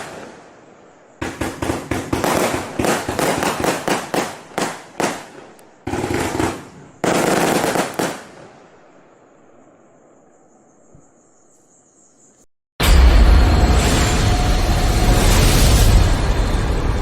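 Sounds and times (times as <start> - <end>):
firework crackling: 0.0 - 8.6
firework bang: 12.8 - 17.0.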